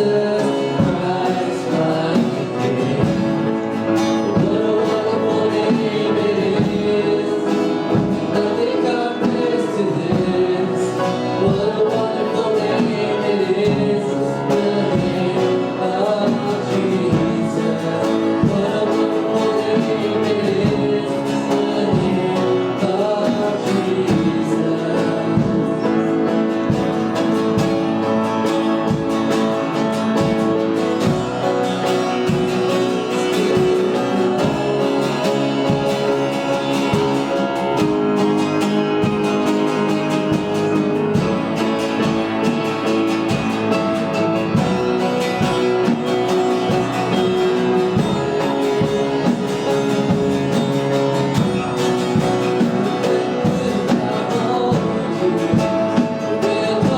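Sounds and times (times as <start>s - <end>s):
guitar-led band playing: 0.0s - 56.9s
person singing: 0.0s - 56.9s.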